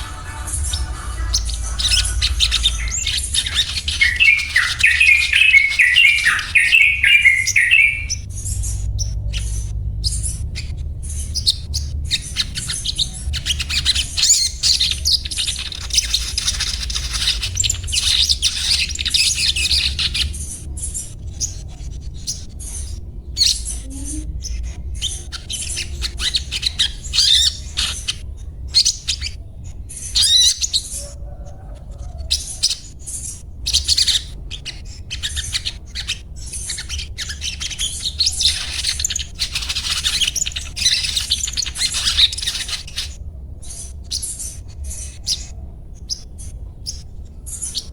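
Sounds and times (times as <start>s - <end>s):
bird twittering chatter: 0.0s - 29.4s, 30.0s - 45.5s
steady low hum: 0.0s - 30.0s.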